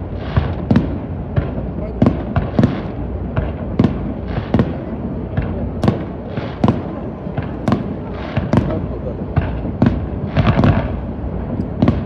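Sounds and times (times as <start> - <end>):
firework shells bursting: 5.8 - 11.0.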